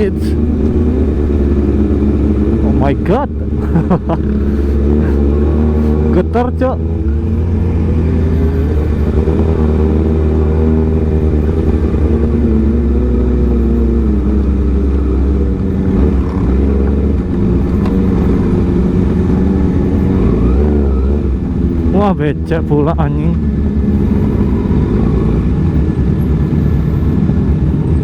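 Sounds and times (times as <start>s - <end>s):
low rumble: 0.0s - 28.0s
motorcycle engine running: 0.0s - 28.0s.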